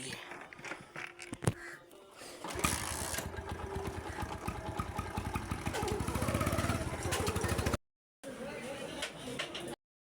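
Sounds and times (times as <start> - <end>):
motorcycle engine starting and idling: 2.4 - 7.8.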